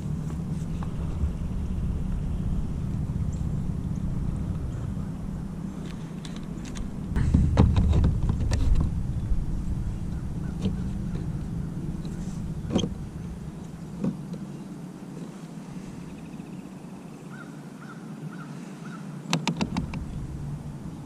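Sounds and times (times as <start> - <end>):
low steady rumble: 0.0 - 17.9, 19.5 - 21.0
clicks and knocks: 6.2 - 9.0.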